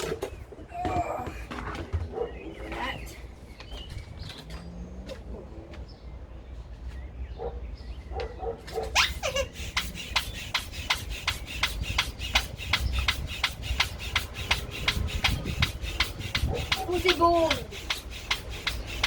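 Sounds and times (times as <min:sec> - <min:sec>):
air pump strokes: 0:08.7 - 0:19.0
pump squeak: 0:08.8 - 0:19.0.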